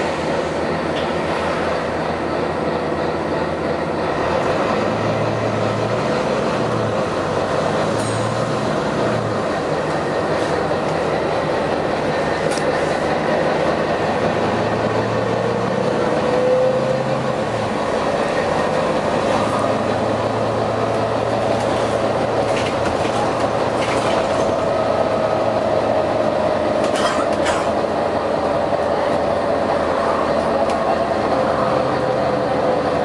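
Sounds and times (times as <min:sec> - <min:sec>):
bus engine humming and whining: 0:00.0 - 0:33.0.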